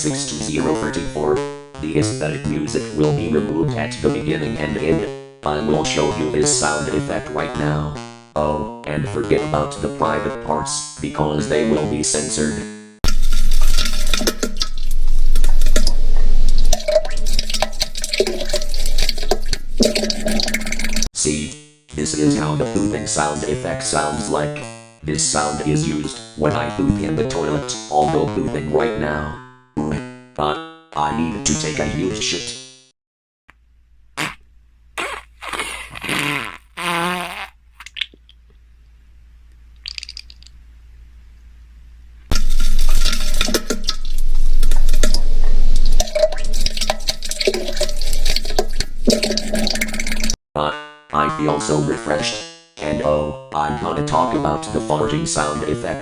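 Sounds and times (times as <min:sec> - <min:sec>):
toilet flushing: 0:13.1 - 0:21.1, 0:42.3 - 0:50.4
cartoon fart noises: 0:34.2 - 0:34.4, 0:35.0 - 0:38.2
cartoon wet crackling splats: 0:39.8 - 0:40.5.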